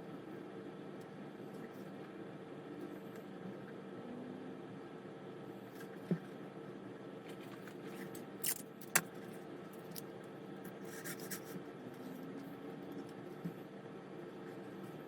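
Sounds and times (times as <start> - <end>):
steady low hum: 0.0 - 15.0
small clicks and scrapes of model parts: 7.3 - 9.1, 9.8 - 12.1.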